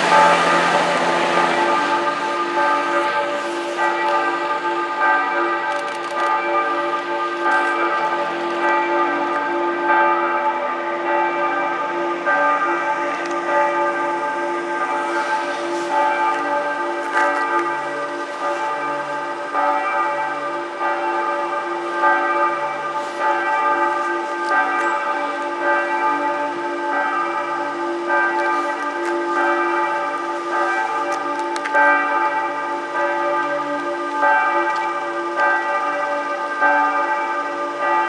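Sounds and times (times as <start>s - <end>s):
low bell strikes: 0.0s - 5.7s
church bells pealing: 0.0s - 38.0s.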